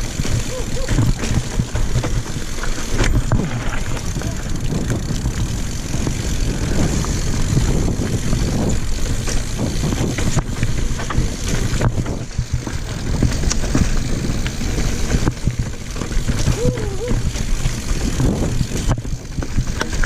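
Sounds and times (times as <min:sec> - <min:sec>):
bike clicks and rattles: 0:00.0 - 0:20.0
bike rumbling over rough trail: 0:00.0 - 0:20.0.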